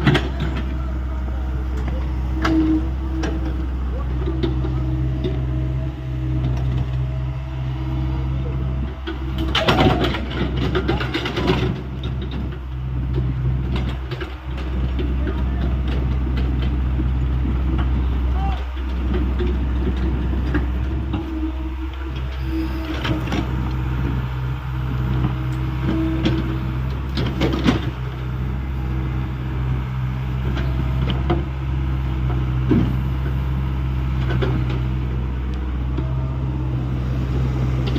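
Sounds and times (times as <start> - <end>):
excavator diesel engine running: 0.0 - 37.9
knocks and clatter: 8.9 - 18.0, 25.1 - 28.1.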